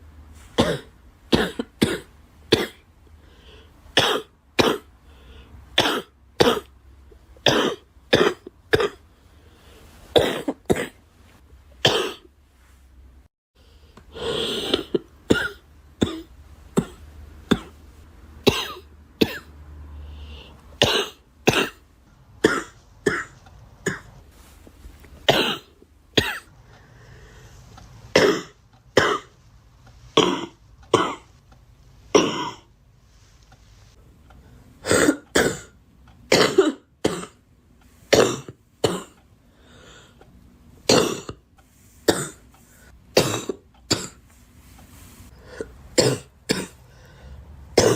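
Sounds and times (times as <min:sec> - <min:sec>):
girl coughing: 0:00.6 - 0:02.8, 0:05.8 - 0:06.7, 0:07.5 - 0:09.0, 0:10.2 - 0:11.0, 0:11.8 - 0:12.3, 0:14.2 - 0:17.8, 0:18.4 - 0:19.5, 0:20.8 - 0:21.8, 0:22.4 - 0:24.1, 0:25.3 - 0:26.5, 0:28.1 - 0:29.3, 0:30.1 - 0:31.3, 0:32.1 - 0:32.7, 0:34.8 - 0:37.4, 0:38.1 - 0:39.2, 0:40.9 - 0:41.4, 0:43.1 - 0:44.2, 0:45.4 - 0:46.8.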